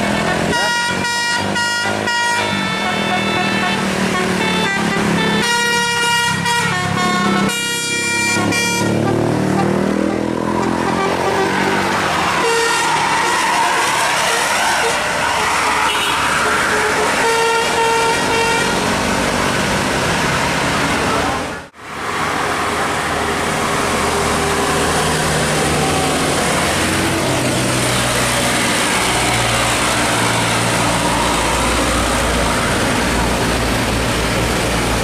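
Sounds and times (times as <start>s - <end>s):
multi-tone bus horn chord: 0.0s - 15.0s, 15.8s - 18.9s
diesel bus engine pulling away: 0.0s - 35.0s
road noise: 0.0s - 35.0s.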